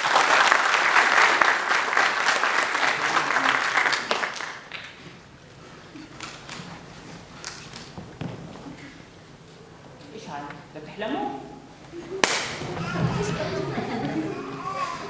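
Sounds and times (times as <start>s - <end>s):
audience applauding: 0.0s - 5.0s.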